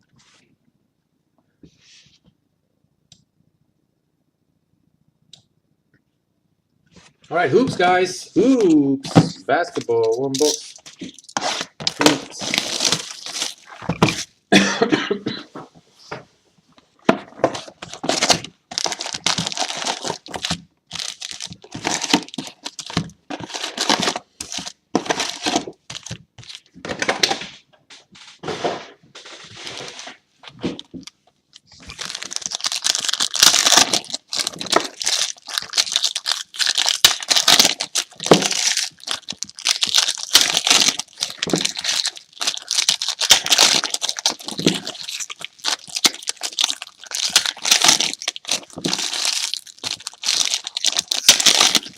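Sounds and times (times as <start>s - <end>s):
plastic crinkling: 9.7s - 14.3s, 17.4s - 27.3s, 29.2s - 51.9s
plastic wrapping tearing: 9.7s - 14.3s, 17.6s - 27.3s, 29.5s - 51.9s.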